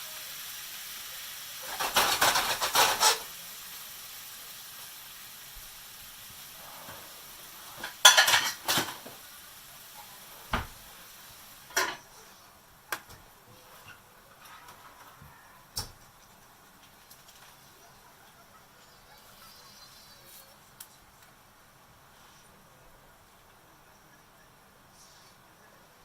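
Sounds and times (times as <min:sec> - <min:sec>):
faint cooking hiss: 0:00.0 - 0:26.0
cookware and utensils clattering: 0:01.6 - 0:03.4, 0:06.5 - 0:09.3, 0:11.6 - 0:12.3, 0:12.9 - 0:18.5.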